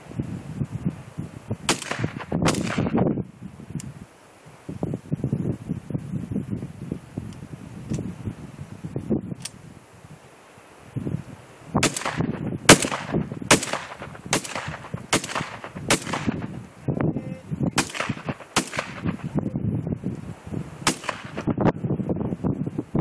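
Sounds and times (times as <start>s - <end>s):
wind rumble: 0.0s - 23.0s
shotgun shots: 1.7s - 3.0s, 11.8s - 16.5s, 17.8s - 19.4s, 20.9s - 21.5s.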